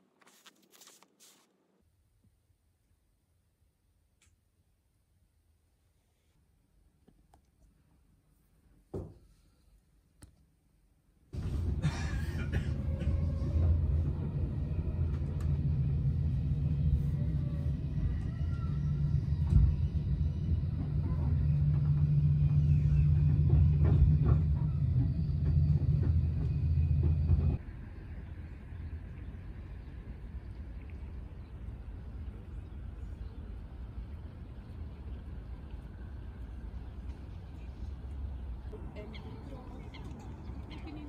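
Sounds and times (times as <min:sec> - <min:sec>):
low mechanical rumble: 0:11.4 - 0:41.0.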